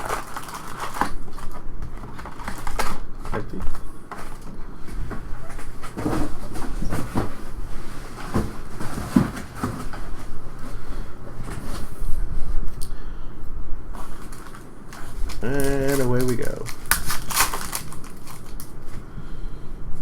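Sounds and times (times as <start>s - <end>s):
rustling of cardboard and wrappers: 0.0s - 12.3s, 13.9s - 19.1s
cardboard boxes knocking: 8.2s - 10.2s.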